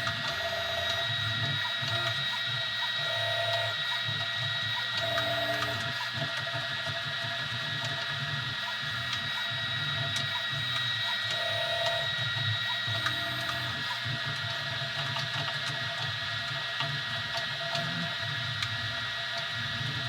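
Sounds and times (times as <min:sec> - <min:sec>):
steady high whine: 0:00.0 - 0:06.1
stepper motors humming: 0:00.0 - 0:06.1.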